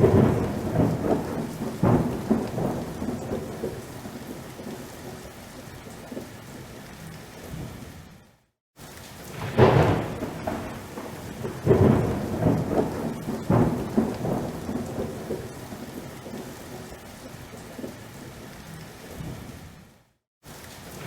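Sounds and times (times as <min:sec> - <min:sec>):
thunder cracks and rumble: 0:00.0 - 0:05.4, 0:09.3 - 0:16.9
steady rain: 0:00.0 - 0:21.0.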